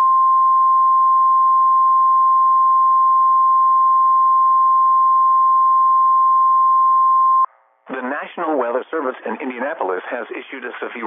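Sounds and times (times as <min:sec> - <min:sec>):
faint radio hiss: 0:07.9 - 0:11.0.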